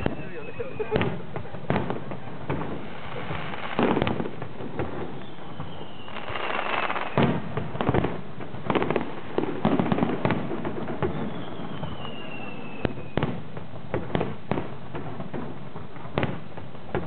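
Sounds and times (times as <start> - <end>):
falling firework whistle: 0.0 - 1.9, 2.6 - 8.1, 9.6 - 13.4
fireworks booming and crackling: 0.0 - 17.0.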